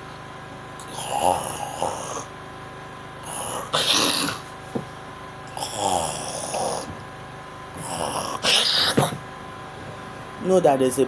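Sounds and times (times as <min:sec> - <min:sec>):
person snoring heavily: 0:00.8 - 0:02.3, 0:03.2 - 0:04.5, 0:05.5 - 0:07.0, 0:07.7 - 0:09.2.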